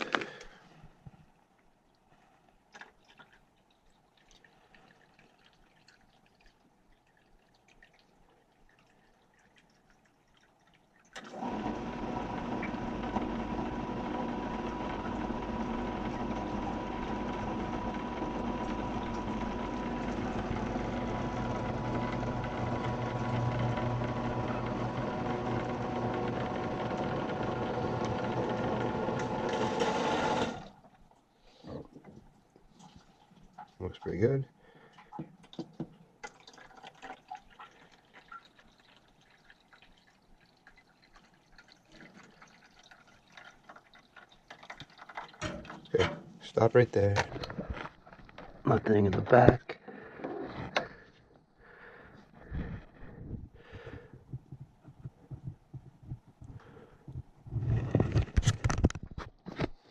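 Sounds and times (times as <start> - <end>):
pump humming with water noise: 2.7 - 50.1.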